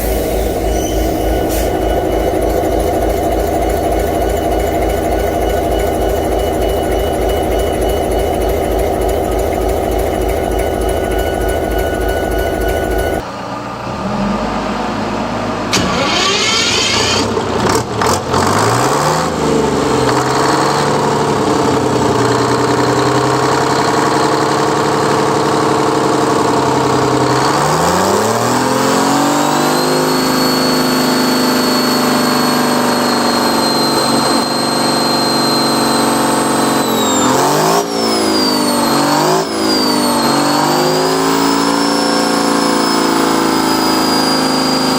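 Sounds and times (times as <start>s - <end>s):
high thin whine: 0.0s - 13.2s
diesel engine revving: 0.0s - 44.9s.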